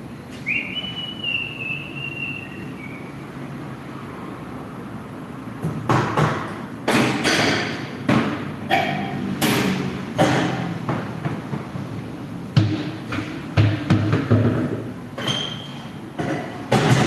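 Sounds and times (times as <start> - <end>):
tools knocking and clattering: 16.2 - 17.0.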